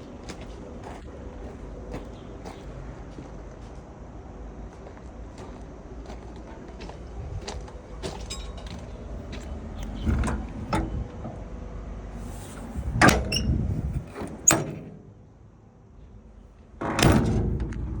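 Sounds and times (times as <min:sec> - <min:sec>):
low engine rumble: 0:00.0 - 0:18.0
excavator metal clanks: 0:07.9 - 0:11.4, 0:12.5 - 0:15.0.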